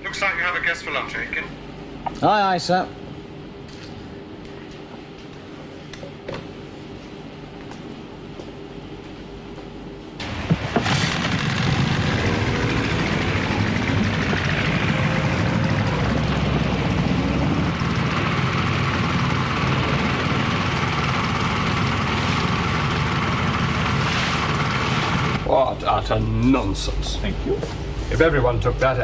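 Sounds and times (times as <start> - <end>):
loud steady engine noise: 10.2 - 29.0.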